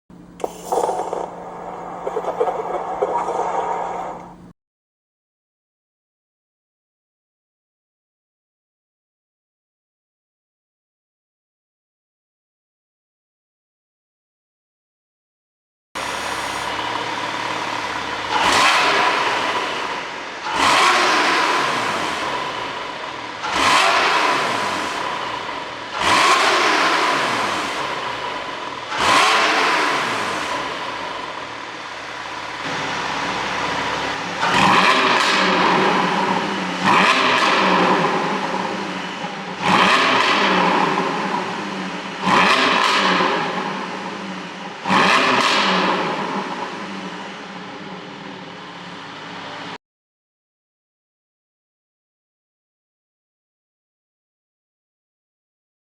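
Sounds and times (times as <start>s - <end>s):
car engine revving and crackling: 0.2s - 4.5s, 16.0s - 49.8s
car engine idling: 16.0s - 20.4s, 24.6s - 34.9s.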